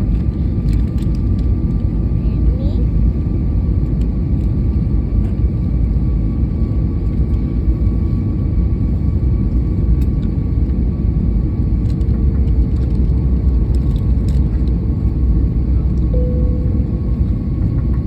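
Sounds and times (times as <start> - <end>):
airliner engine and airflow rumble: 0.0 - 18.0
faint steady tones: 16.1 - 18.0.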